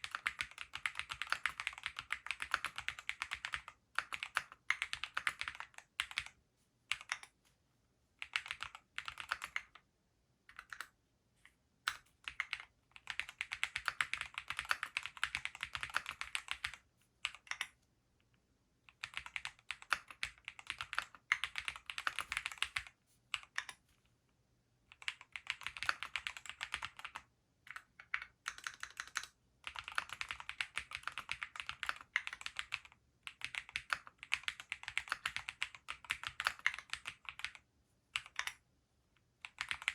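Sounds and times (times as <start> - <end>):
mechanical keyboard typing: 0.0 - 7.4, 8.2 - 9.9, 10.5 - 11.0, 11.9 - 17.8, 18.9 - 23.8, 24.9 - 38.6, 39.4 - 39.9.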